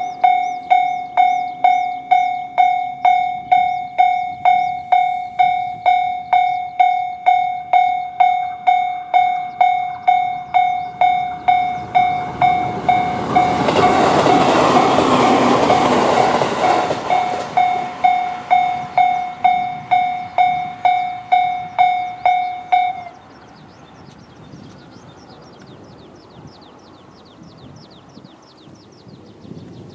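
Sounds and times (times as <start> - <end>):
level crossing alarm bell: 0.0 - 23.3
electric train passing: 0.0 - 29.8.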